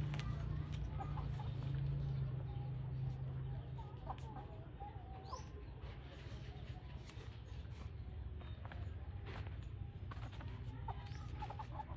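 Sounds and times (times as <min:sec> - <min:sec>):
chickens clucking: 0:00.7 - 0:02.5, 0:10.1 - 0:11.9.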